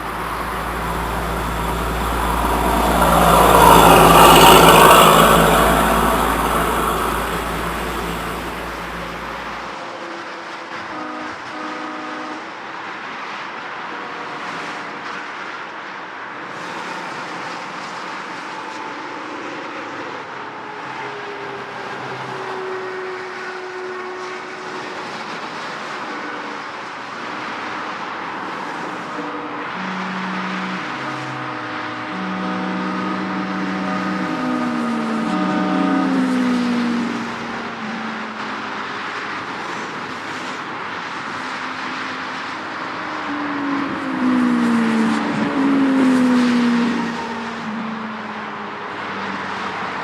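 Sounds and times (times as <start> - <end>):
held steady tones: 0.0 - 9.6, 29.8 - 38.8
heavy road traffic: 0.0 - 50.0.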